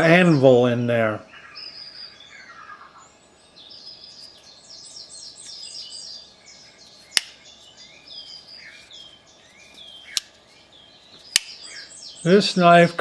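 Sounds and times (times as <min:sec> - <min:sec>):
birds chirping and singing: 0:00.0 - 0:13.0
sharp click: 0:07.1 - 0:07.4, 0:11.2 - 0:11.6.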